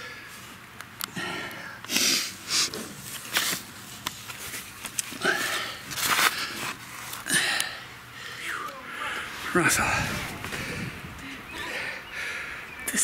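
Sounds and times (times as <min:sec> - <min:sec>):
man breathing hard: 0:00.0 - 0:00.4, 0:01.1 - 0:02.8, 0:05.2 - 0:12.8.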